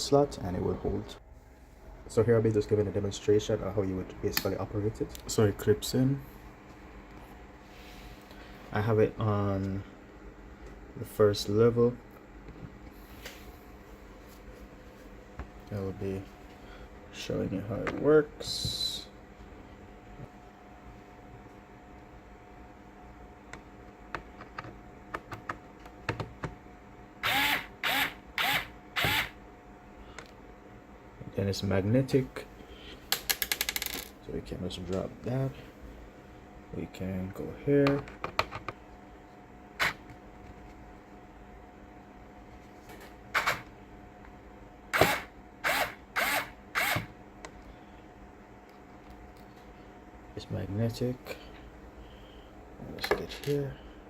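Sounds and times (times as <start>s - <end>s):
electric screwdriver motor spinning: 27.2s - 29.3s, 45.0s - 47.1s.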